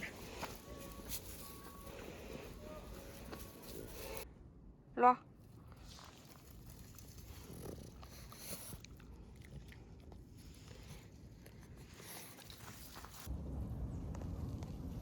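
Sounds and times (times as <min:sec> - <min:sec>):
dog chewing: 0:05.6 - 0:13.2.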